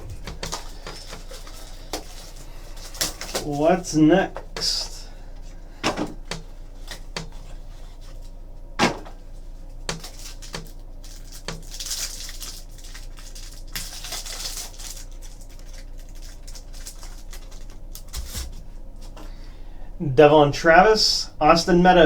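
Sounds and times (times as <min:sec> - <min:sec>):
high rustling of wrapping: 0:00.0 - 0:03.8, 0:10.0 - 0:18.6.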